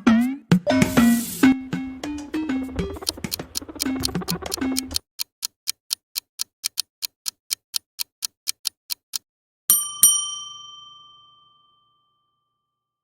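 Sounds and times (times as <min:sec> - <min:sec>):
clock ticking: 0:01.6 - 0:09.3
bell dings: 0:09.7 - 0:12.8.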